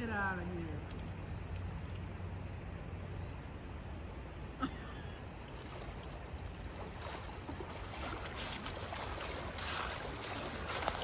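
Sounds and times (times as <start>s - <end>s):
river water rushing: 5.3s - 11.0s.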